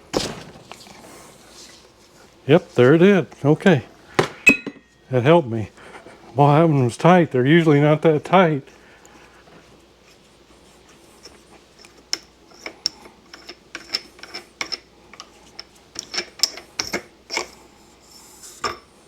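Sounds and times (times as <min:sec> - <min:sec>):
tools and metal parts clicking: 0:12.1 - 0:17.4.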